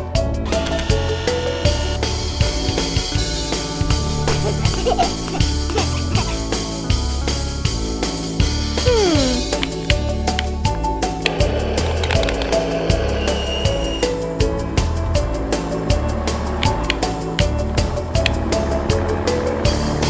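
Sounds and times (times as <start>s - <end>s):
upbeat cartoon music: 0.0s - 20.0s.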